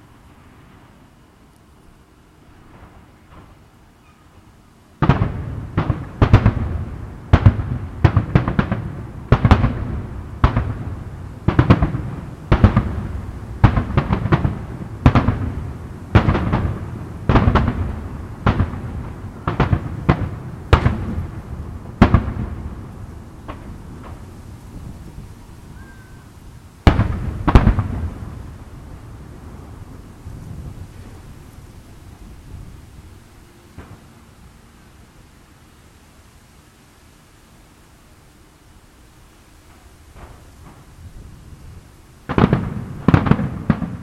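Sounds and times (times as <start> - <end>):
fireworks bursting with echo: 2.5 - 3.7, 5.0 - 34.6, 39.7 - 44.0.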